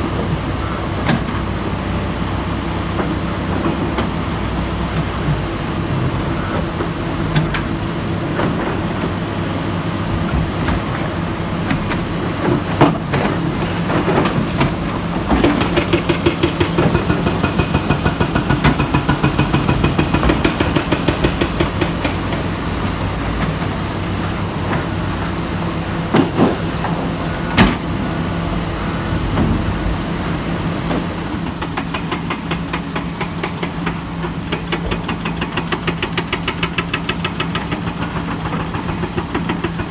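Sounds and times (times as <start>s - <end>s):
excavator diesel engine running: 0.0s - 39.9s
sharp metallic knocks: 15.4s - 22.5s.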